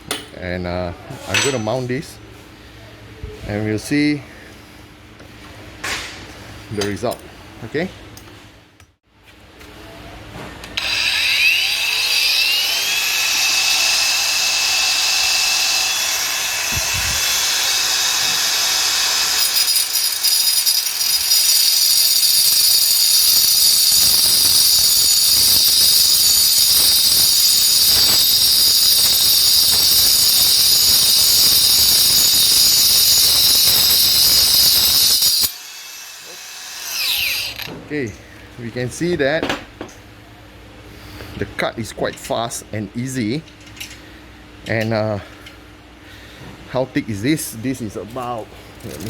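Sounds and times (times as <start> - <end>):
angle grinder cutting metal: 10.8 - 37.7.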